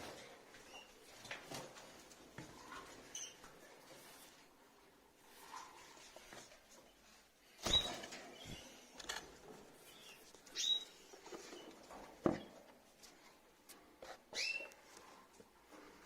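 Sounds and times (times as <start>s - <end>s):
lovebirds squeaky calls: 10.0s - 11.0s, 14.4s - 14.7s.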